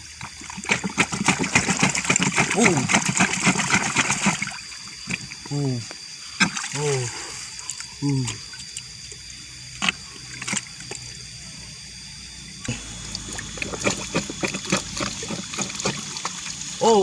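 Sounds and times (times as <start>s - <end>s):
shallow water trickling: 12.4s - 16.9s.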